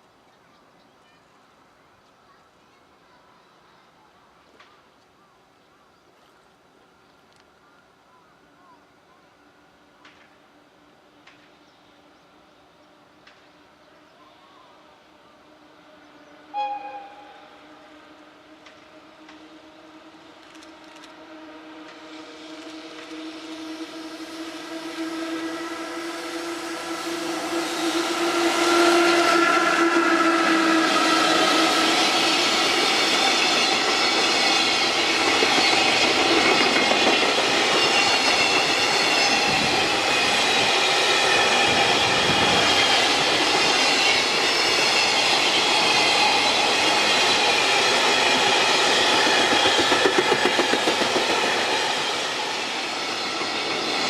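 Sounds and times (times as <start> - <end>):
electric locomotive humming: 6.7 - 54.0
wheels clattering on rails: 41.6 - 52.2.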